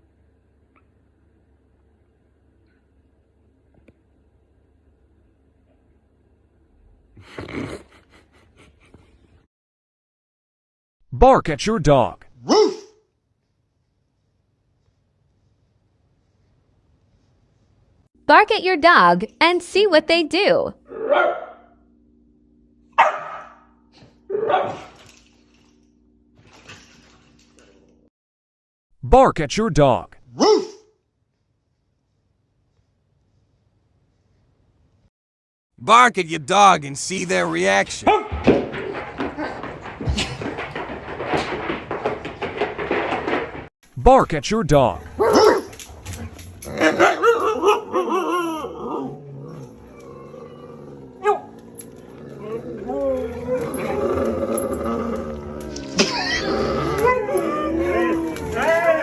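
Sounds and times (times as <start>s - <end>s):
dog barking: 12.4s - 13.0s, 20.9s - 21.8s, 23.0s - 25.0s, 30.4s - 30.9s, 38.0s - 38.4s, 45.2s - 45.7s, 46.8s - 48.3s, 51.2s - 51.5s
dog howling: 46.7s - 59.0s.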